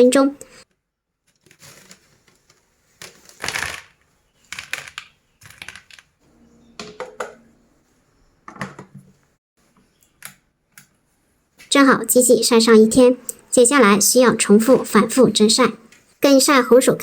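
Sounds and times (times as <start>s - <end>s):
pumpkin pieces clicking and clattering: 3.0s - 6.1s.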